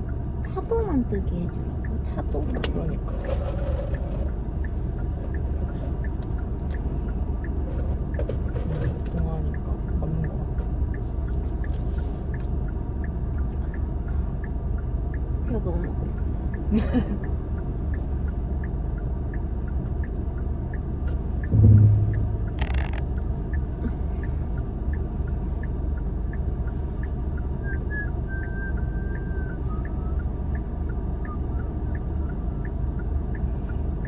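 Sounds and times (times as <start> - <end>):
low rumble in car cabin: 0.0 - 34.0
dull thump: 21.5 - 23.1.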